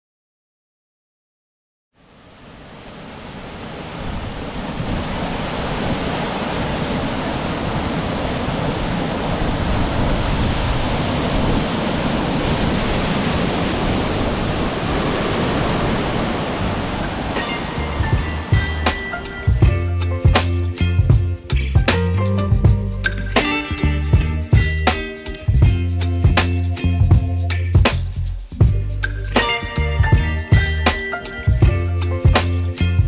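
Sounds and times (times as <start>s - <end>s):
wind buffeting microphone: 3.9s - 20.3s.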